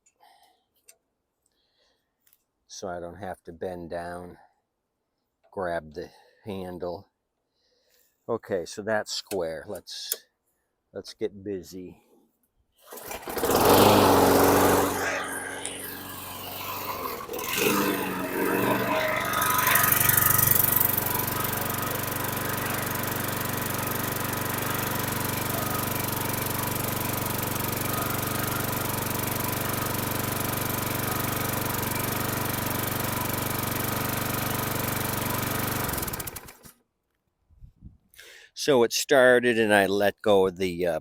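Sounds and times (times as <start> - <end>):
lawn mower engine running: 12.9 - 36.7.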